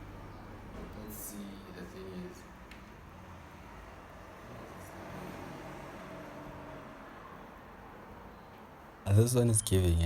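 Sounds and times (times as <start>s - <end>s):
low background rumble and hiss: 0.0s - 5.0s, 8.8s - 10.0s.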